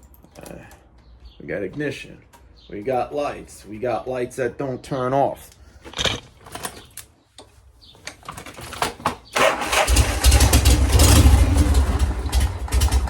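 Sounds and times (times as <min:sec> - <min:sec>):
motorcycle engine running lumpy: 0:09.8 - 0:13.0.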